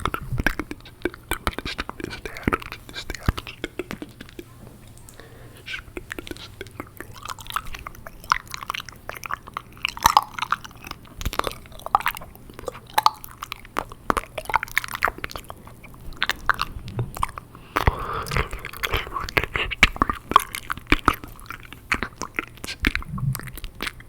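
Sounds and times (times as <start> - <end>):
wet mouth sounds: 0.0 - 24.0.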